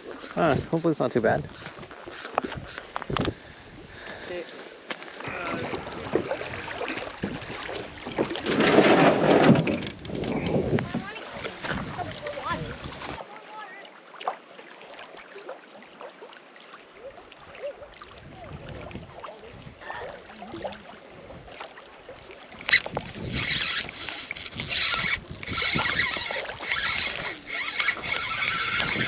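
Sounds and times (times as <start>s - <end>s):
water sounds: 0.0s - 29.0s
fishing reel whirring: 22.6s - 29.0s.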